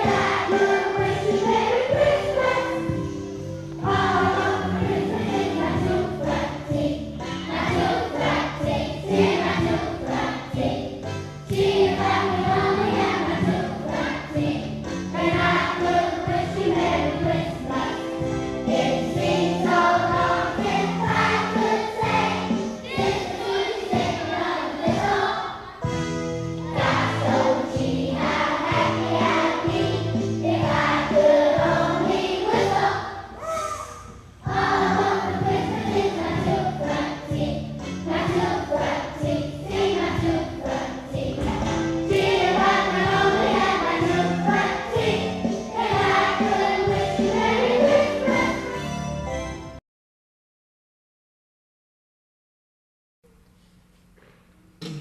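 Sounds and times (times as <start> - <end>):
children's choir singing: 0.0 - 49.4
musical accompaniment: 0.0 - 49.8.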